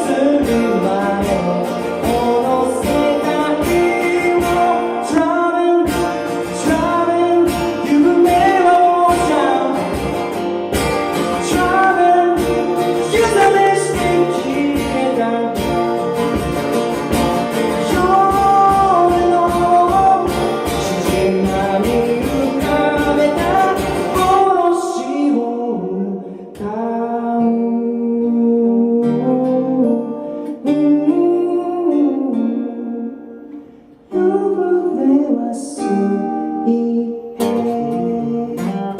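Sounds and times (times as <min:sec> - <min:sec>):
guitar: 0:00.0 - 0:38.9
person singing: 0:00.0 - 0:38.9
steady beat: 0:01.2 - 0:24.4.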